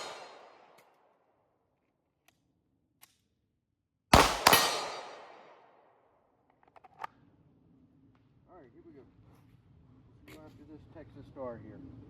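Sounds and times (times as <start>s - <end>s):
pistol shots with echo: 0.0s - 0.8s, 4.1s - 5.9s.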